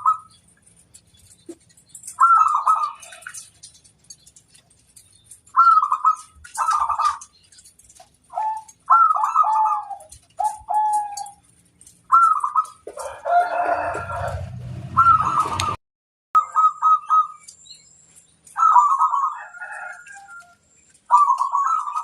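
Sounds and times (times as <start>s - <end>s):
doves cooing: 0.0s - 15.8s, 18.5s - 22.0s
harsh bird call: 13.5s - 15.8s.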